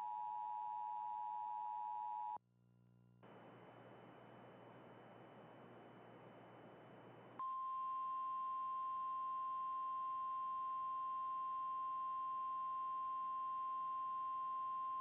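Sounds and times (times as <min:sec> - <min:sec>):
faint hiss: 0:03.2 - 0:07.4.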